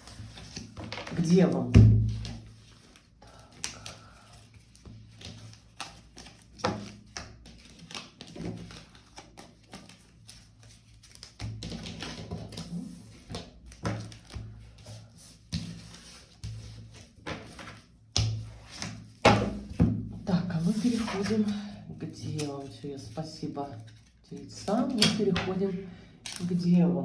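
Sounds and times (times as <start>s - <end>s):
cards tapping and clicking: 11.1s - 14.6s.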